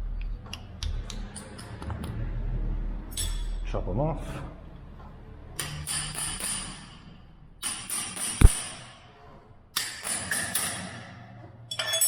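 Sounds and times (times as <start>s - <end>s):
sharp knock: 8.4s - 8.7s.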